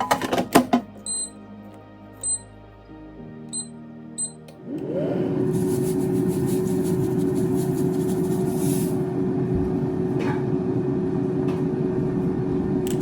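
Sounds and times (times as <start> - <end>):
air fryer fan whoosh: 4.6 - 13.0.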